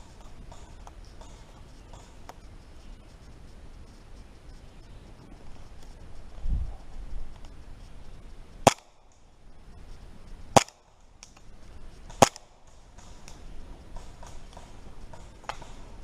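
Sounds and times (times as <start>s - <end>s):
airsoft gun shots: 8.6s - 9.0s, 10.5s - 10.9s, 12.1s - 13.2s.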